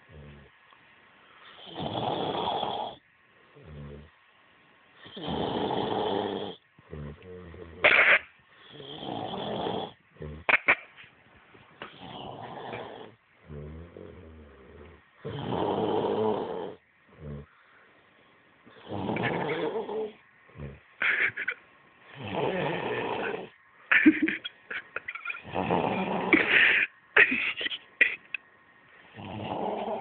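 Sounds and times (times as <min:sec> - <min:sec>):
man snoring heavily: 0:01.6 - 0:03.0, 0:05.0 - 0:07.8, 0:08.7 - 0:10.5, 0:12.0 - 0:17.5, 0:18.8 - 0:20.8, 0:22.2 - 0:23.5, 0:25.4 - 0:26.6, 0:29.2 - 0:30.0.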